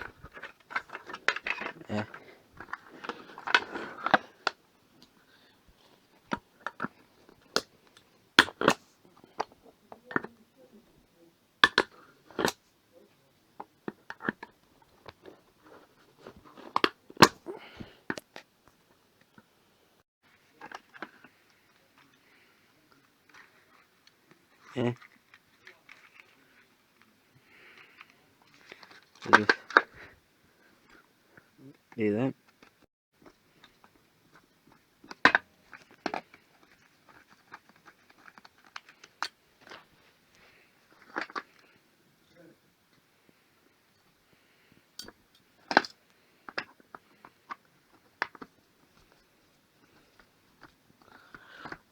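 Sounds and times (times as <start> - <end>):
plastic and metal parts clicking: 0.0 - 4.6, 45.0 - 49.2.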